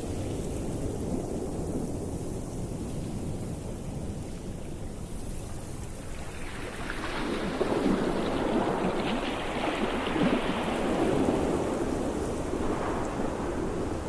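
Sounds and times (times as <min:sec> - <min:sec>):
ocean waves breaking: 0:05.9 - 0:14.0.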